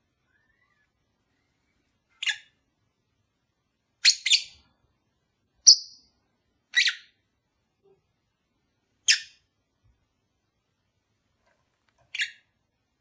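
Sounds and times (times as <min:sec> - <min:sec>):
lovebird chirping shrilly: 0:04.0 - 0:04.6, 0:05.6 - 0:06.0, 0:09.1 - 0:09.4.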